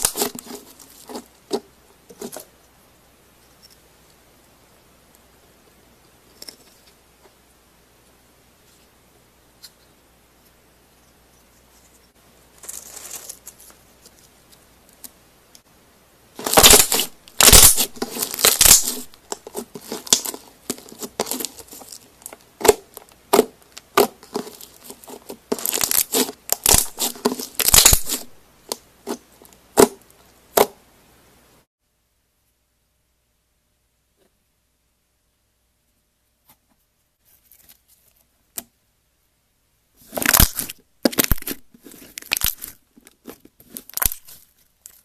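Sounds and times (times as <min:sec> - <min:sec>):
slime crackling and popping: 0:00.0 - 0:01.2, 0:16.4 - 0:28.8, 0:40.1 - 0:45.0
soft rustle: 0:08.6 - 0:15.2, 0:36.4 - 0:38.4.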